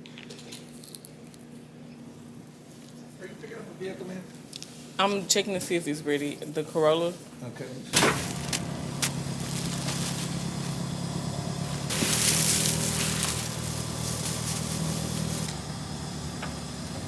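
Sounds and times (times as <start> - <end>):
car engine idling: 8.0 - 17.0
hiss: 11.8 - 15.6.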